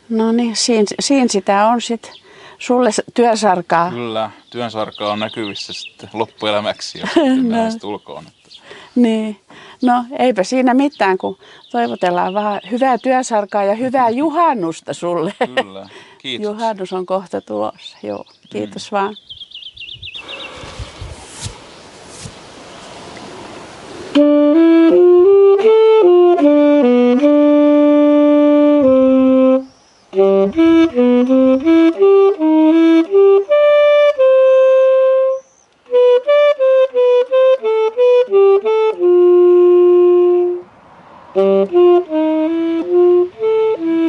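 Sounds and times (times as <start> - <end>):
solo saxophone melody: 7.3 - 7.8, 23.1 - 44.0.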